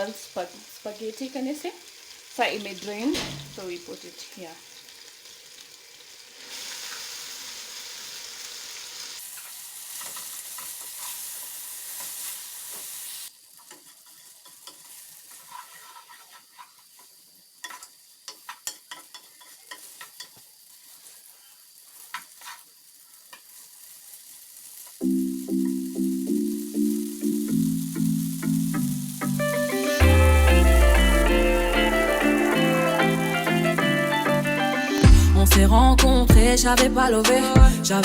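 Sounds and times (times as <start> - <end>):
utensil stirring in a pan: 0.0 - 25.0
food sizzling in a frying pan: 0.0 - 38.0
mallet-like music: 29.4 - 37.8.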